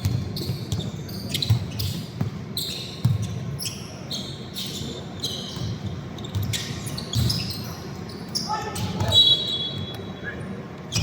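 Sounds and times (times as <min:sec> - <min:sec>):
basketball bouncing on court: 0:00.0 - 0:03.7, 0:05.2 - 0:07.6
sneaker squeaks on floor: 0:00.0 - 0:11.0.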